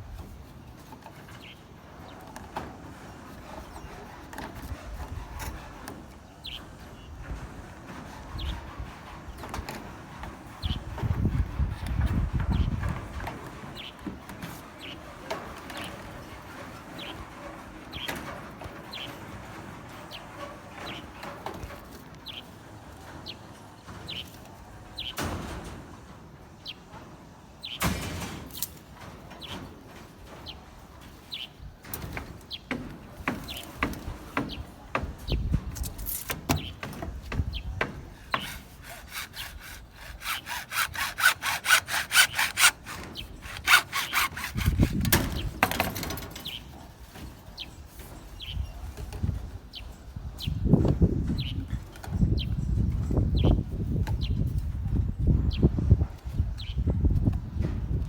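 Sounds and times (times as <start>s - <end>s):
hand sawing: 2.7s - 6.8s, 32.0s - 35.2s, 35.8s - 46.0s
tool knocks and scrapes: 31.8s - 46.6s.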